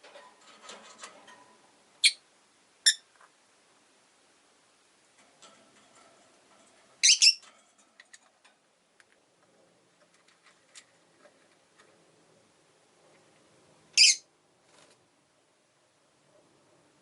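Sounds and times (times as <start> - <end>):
lovebirds chirping: 2.0 - 2.2, 7.0 - 7.4, 14.0 - 14.2
faint clicks and taps: 7.4 - 12.0.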